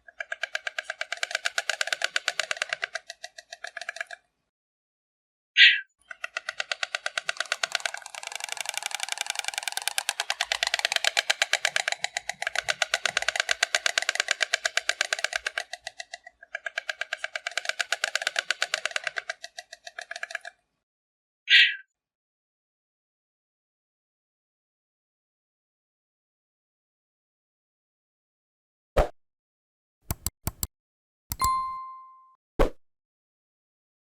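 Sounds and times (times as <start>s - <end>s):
stork clattering its bill: 0.1s - 4.2s, 6.0s - 20.6s.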